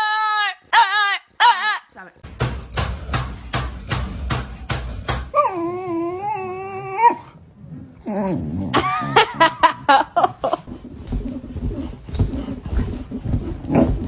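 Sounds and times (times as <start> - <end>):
sharp knocks: 2.2 - 5.4
dog howling: 3.0 - 7.4
dog whining and yipping: 5.3 - 7.3.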